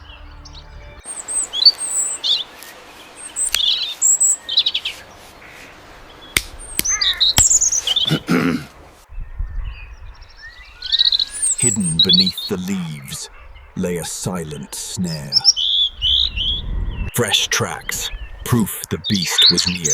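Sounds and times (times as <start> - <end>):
birds chirping and twittering: 0.0 - 19.9
soft steady hiss: 0.0 - 19.9
sharp clicks: 6.4 - 8.2.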